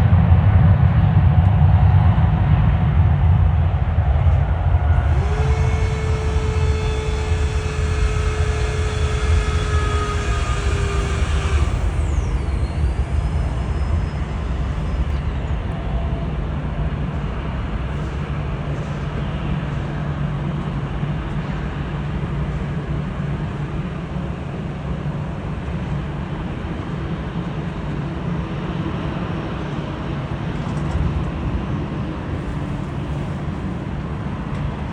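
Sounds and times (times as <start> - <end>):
jet engines rumbling: 0.0 - 28.0
faint high whine: 4.8 - 16.9.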